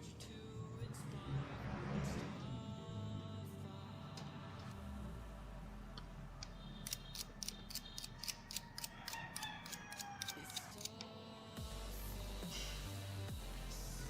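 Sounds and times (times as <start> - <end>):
small parts clicking and ticking: 6.0 - 11.0.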